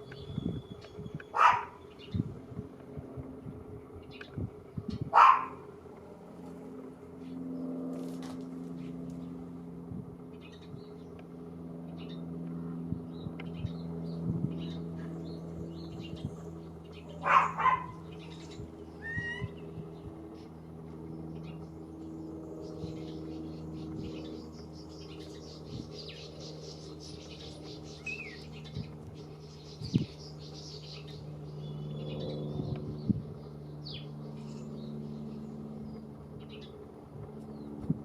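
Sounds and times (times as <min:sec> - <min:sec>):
steady low hum: 0:00.0 - 0:38.0
starling singing chirps and whistles: 0:17.2 - 0:19.7.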